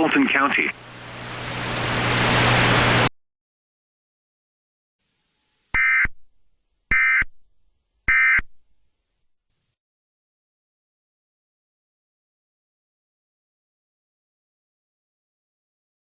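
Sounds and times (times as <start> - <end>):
loud hiss of noise: 0.0 - 3.1.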